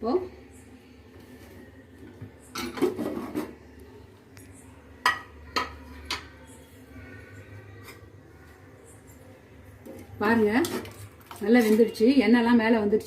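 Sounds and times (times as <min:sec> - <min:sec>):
pressure cooker lid scraping and clattering: 0:02.6 - 0:03.6.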